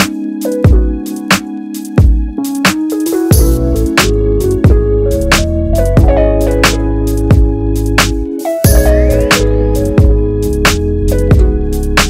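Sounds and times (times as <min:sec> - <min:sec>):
background music with bass: 0:00.0 - 0:12.0
drum hits: 0:05.4 - 0:10.2.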